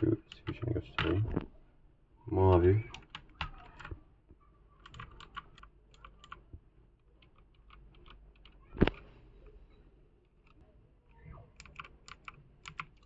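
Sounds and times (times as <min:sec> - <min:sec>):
mechanical keyboard clicks: 0:04.8 - 0:06.4, 0:07.2 - 0:09.0, 0:11.6 - 0:13.0.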